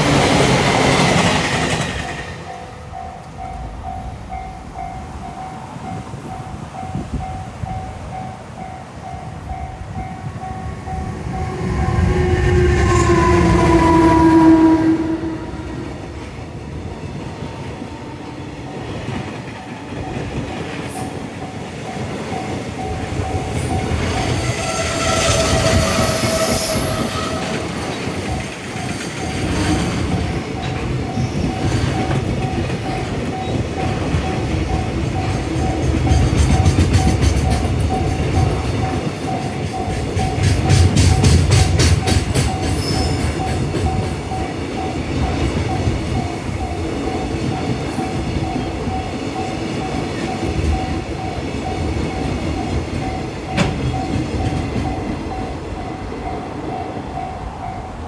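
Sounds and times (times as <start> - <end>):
railroad crossing alarm ringing: 0.0 - 16.2, 17.2 - 58.0
train rumbling: 0.0 - 58.0
train horn: 11.1 - 16.2, 24.2 - 28.6.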